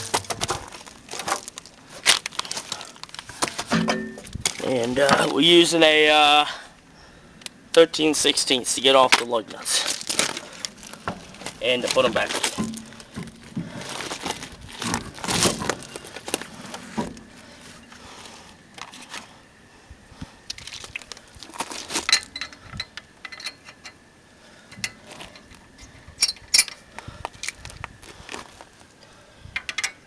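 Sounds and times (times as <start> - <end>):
lug nuts and wrench clinking: 22.1 - 24.0, 26.2 - 26.8.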